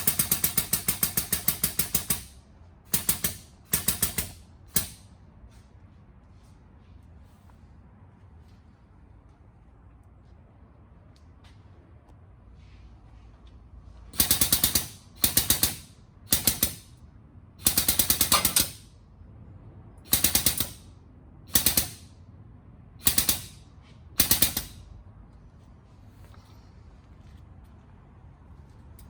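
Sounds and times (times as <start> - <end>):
pneumatic impact tool hammering: 0.0 - 5.1, 14.2 - 17.0, 17.6 - 18.9, 20.1 - 20.9, 21.5 - 22.1, 23.0 - 23.6, 24.2 - 24.9.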